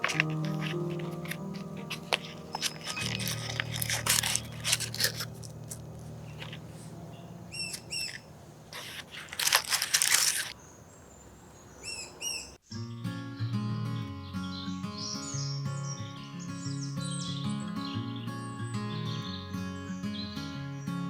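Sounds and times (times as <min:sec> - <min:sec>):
rustling and crunching handling: 0:00.0 - 0:10.6.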